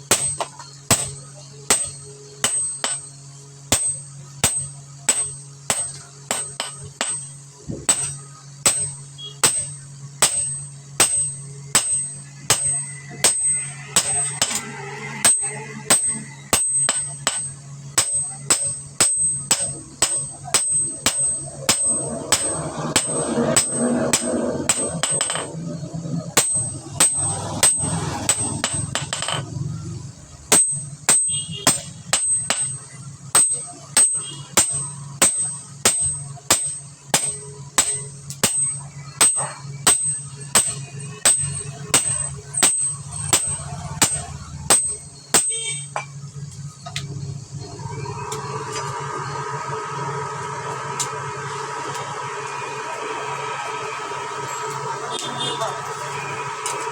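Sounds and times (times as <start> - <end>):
hammer striking steel on anvil: 0.0 - 29.7, 30.5 - 46.2
steady low hum: 0.0 - 56.9.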